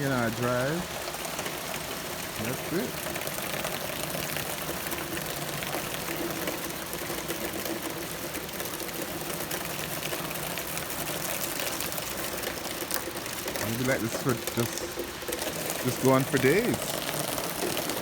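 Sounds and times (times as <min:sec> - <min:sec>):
rain falling steadily: 0:00.0 - 0:18.0.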